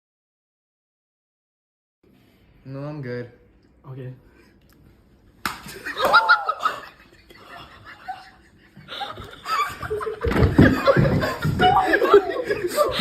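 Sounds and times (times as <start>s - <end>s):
laughter: 5.7s - 13.0s.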